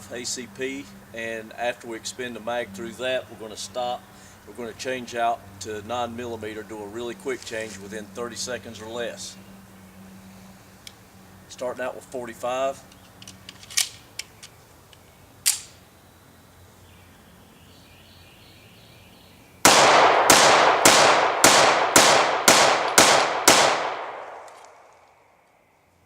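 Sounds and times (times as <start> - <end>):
sharp click: 15.4 - 15.8
pistol shots: 19.7 - 24.8.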